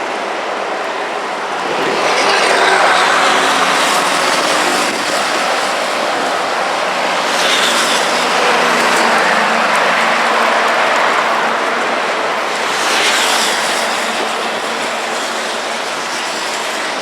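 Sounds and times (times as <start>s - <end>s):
heavy road traffic passing: 0.0s - 17.0s.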